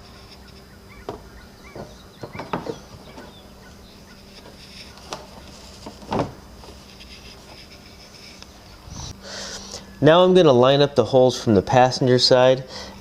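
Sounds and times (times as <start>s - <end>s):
steady low hum: 0.0s - 13.0s
windshield knocking and rubbing: 1.1s - 3.4s.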